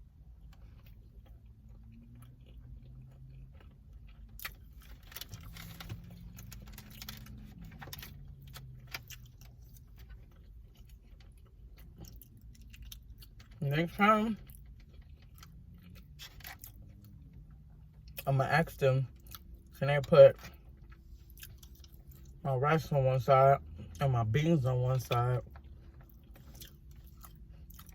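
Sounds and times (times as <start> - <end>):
quiet chewing: 0.3 - 13.6, 14.4 - 18.2, 20.4 - 22.4, 25.4 - 27.9.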